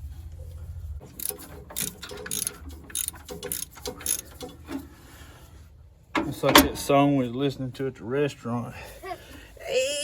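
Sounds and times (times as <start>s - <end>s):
ratchet wrench clicking: 1.1s - 4.8s.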